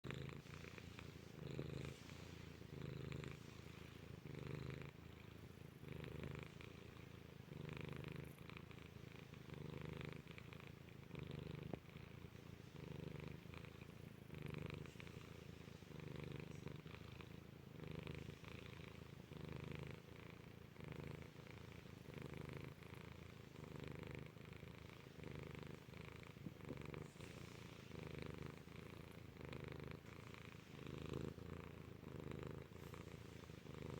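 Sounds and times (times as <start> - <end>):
cat purring: 0.0 - 33.9.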